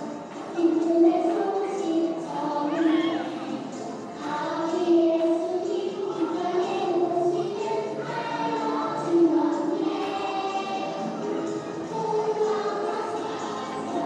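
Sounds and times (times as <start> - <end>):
children's choir singing: 0.0 - 14.0
musical accompaniment: 0.0 - 14.0.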